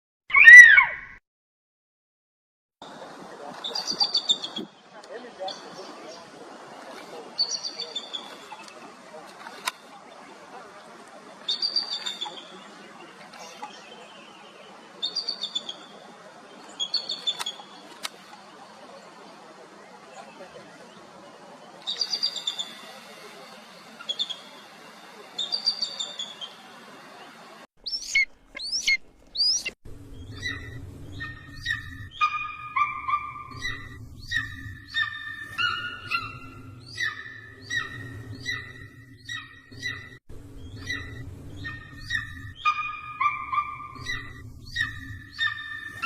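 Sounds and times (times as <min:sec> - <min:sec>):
high chittering eagle calls: 0:00.3 - 0:01.0, 0:21.9 - 0:23.3, 0:27.8 - 0:46.0
low hum: 0:22.5 - 0:46.0.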